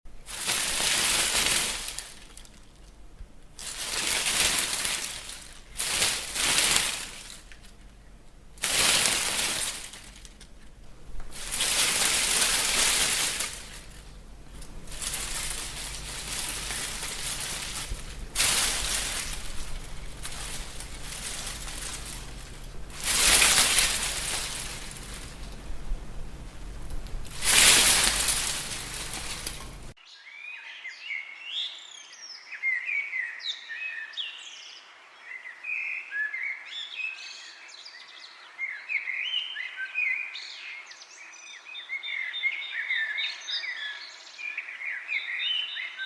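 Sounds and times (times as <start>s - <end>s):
leaves rustling in wind: 0.1s - 30.0s.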